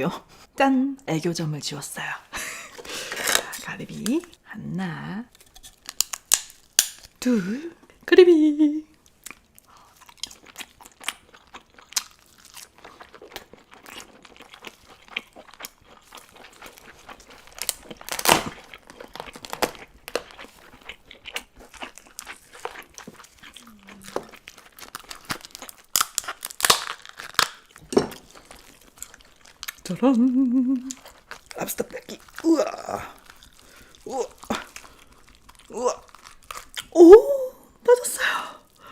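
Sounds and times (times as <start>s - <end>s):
person chewing and crunching: 5.3s - 7.2s, 9.0s - 37.2s.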